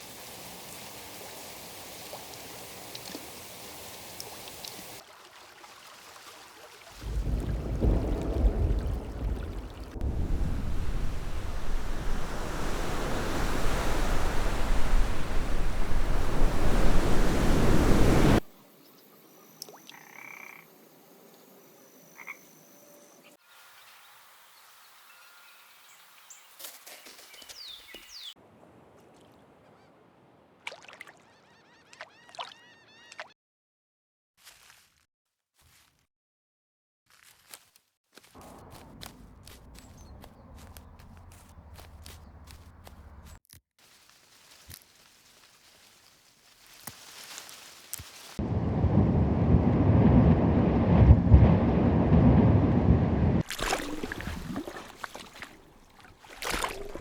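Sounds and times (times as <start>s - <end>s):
frogs croaking: 18.9s - 21.2s, 21.9s - 23.0s.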